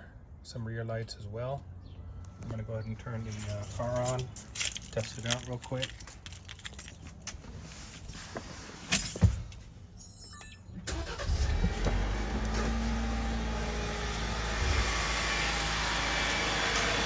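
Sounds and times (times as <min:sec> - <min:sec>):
car engine starting and idling: 0:10.8 - 0:17.0.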